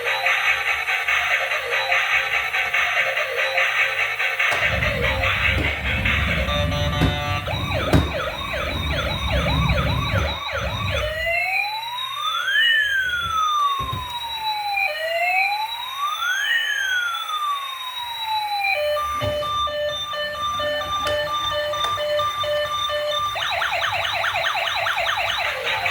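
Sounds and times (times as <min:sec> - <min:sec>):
electronic police siren: 0:00.0 - 0:25.9
steady electronic tones: 0:04.5 - 0:11.4
low rumble: 0:04.6 - 0:11.3.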